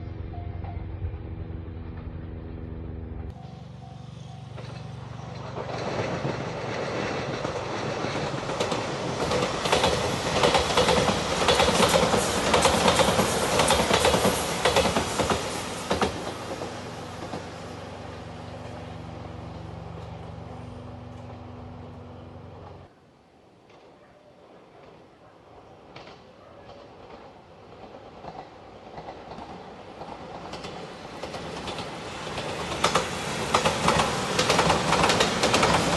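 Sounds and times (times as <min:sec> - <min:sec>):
train wheels clattering over rail joints: 0:04.4 - 0:17.7, 0:26.0 - 0:35.9.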